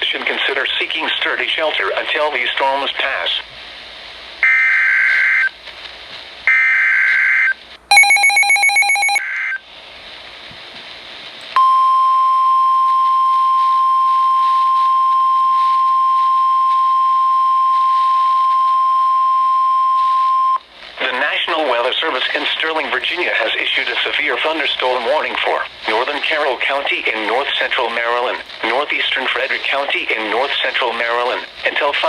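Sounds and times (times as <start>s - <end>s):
radio hiss: 0.0s - 7.9s, 12.9s - 32.0s
steady single-pitch attention tone: 7.9s - 9.2s.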